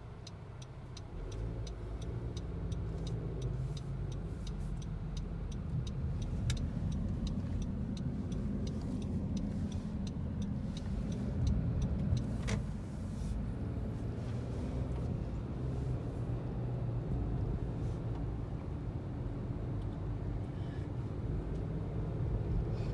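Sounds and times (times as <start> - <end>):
car road and engine rumble: 0.0 - 22.9
light ticks: 0.1 - 13.1.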